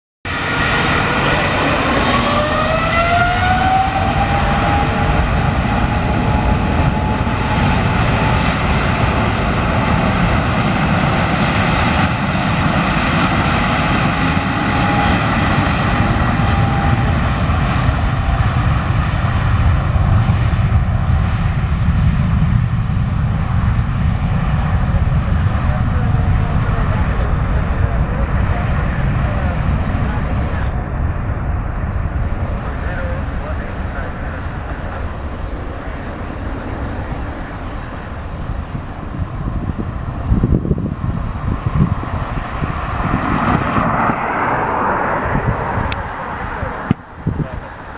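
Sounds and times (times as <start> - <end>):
jet engine whine: 0.3 - 47.9
jet engines roaring: 0.3 - 47.9.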